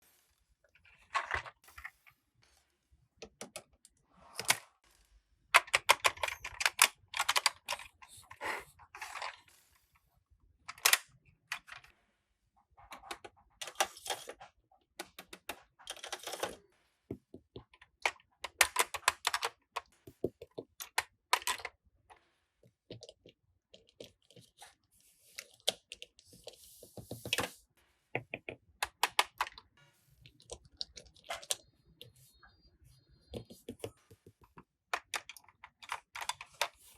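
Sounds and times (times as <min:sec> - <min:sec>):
plastic toy parts clicking: 0:05.6 - 0:08.2, 0:10.7 - 0:11.8, 0:18.0 - 0:19.9, 0:28.8 - 0:29.6, 0:34.9 - 0:36.7.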